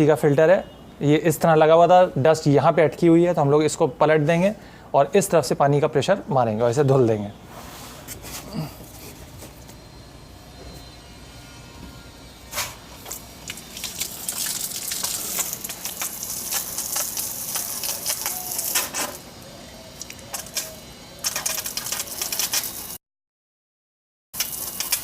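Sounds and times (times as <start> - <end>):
water spraying onto mesh filter: 13.0 - 19.2, 20.0 - 23.0, 24.4 - 25.0.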